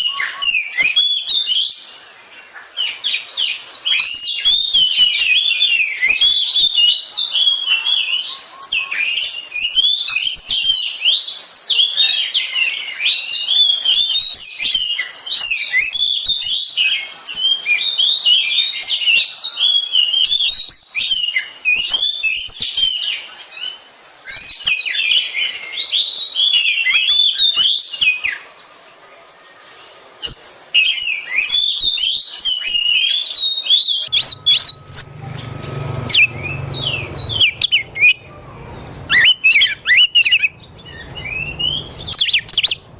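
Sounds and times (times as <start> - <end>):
bird singing whistled phrases: 0.0 - 2.0, 2.8 - 28.5, 30.2 - 42.9
low hum: 34.1 - 39.1.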